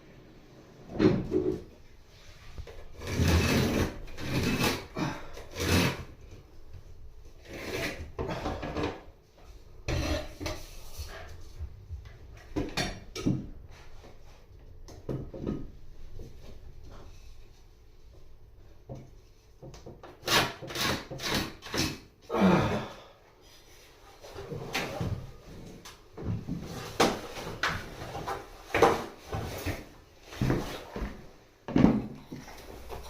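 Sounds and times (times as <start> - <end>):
wood being rasped: 3.0 - 6.1.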